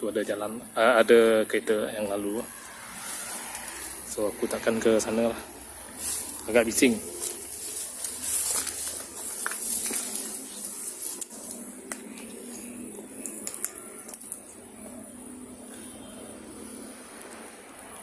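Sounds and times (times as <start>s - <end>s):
faint high whine: 0.0s - 18.0s
traffic hiss: 0.0s - 18.0s
light clicks and crackles: 7.2s - 14.6s.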